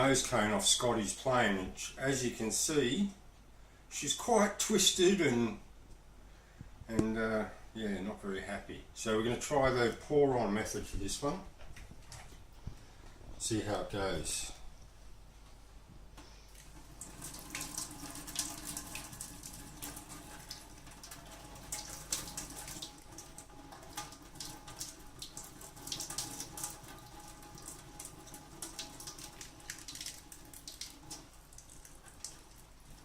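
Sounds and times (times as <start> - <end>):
water pouring from a kettle: 16.6 - 33.0
water splashing and trickling: 16.6 - 33.0.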